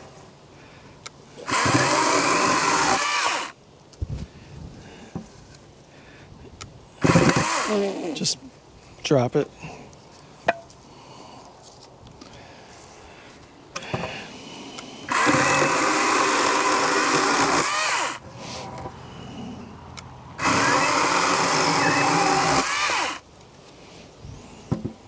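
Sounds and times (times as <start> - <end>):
battery chainsaw cutting wood: 1.4 - 3.6, 7.0 - 8.4, 15.1 - 18.3, 20.4 - 23.2
motor winding down whine: 1.5 - 3.5, 15.1 - 18.2, 20.4 - 23.2.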